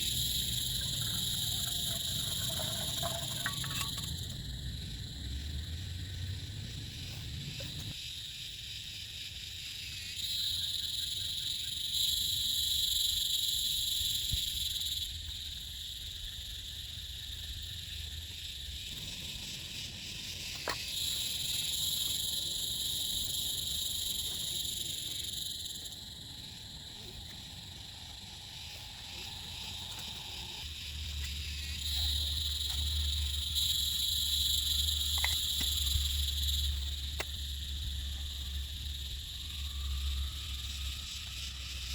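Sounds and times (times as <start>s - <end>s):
low steady rumble: 0.0s - 8.0s
frogs or insects chorus: 0.0s - 41.9s
sharp ticks: 31.2s - 37.8s.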